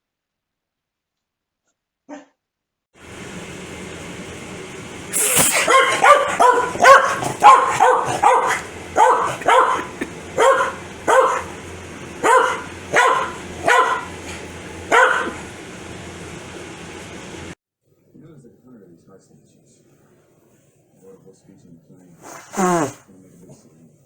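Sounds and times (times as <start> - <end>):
person sneezing: 5.1 - 6.0, 9.3 - 10.2, 22.3 - 23.0
dog barking: 5.2 - 15.5.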